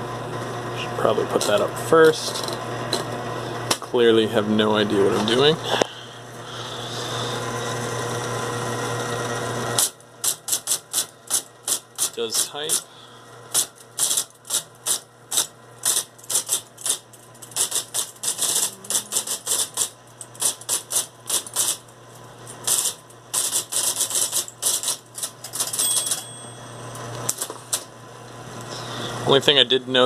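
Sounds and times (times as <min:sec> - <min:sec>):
typewriter motor hum: 0:01.1 - 0:03.8, 0:05.0 - 0:27.9
electric typewriter keystrokes: 0:09.8 - 0:12.8, 0:13.5 - 0:21.8, 0:22.6 - 0:26.4.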